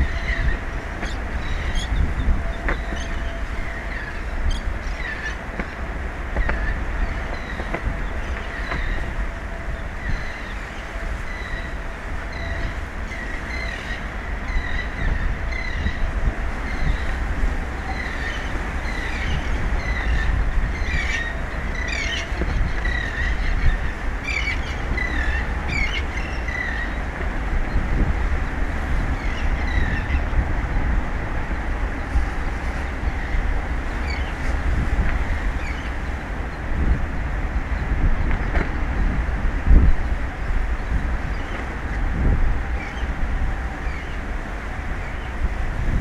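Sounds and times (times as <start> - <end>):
low rumble of wind: 0.0 - 46.0
birds chirping: 17.8 - 30.4.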